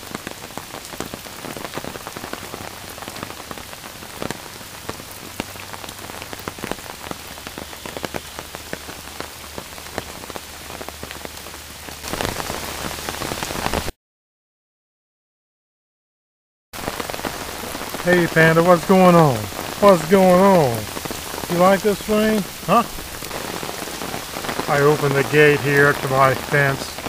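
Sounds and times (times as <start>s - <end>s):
heavy rain falling: 0.0s - 13.9s, 16.8s - 27.0s
raindrops ticking: 0.0s - 13.9s, 16.8s - 27.0s.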